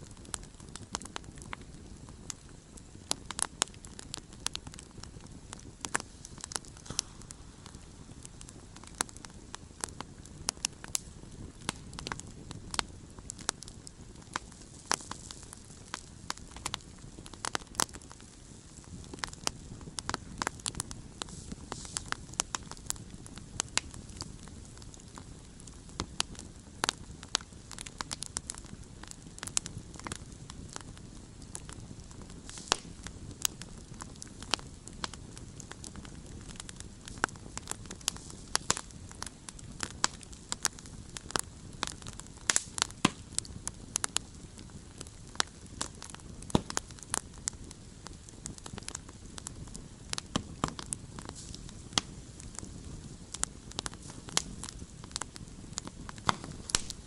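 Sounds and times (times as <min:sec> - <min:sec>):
burning wood crackling and popping: 0:00.0 - 0:57.0
low rush of flame: 0:00.0 - 0:57.0.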